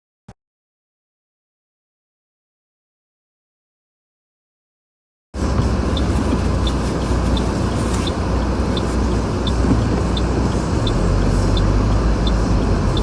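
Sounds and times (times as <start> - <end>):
road and engine rumble: 5.4 - 13.0.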